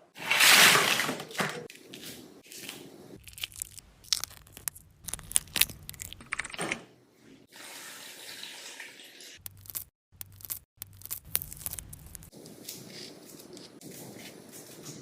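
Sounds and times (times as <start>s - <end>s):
tap water running: 7.5s - 9.5s.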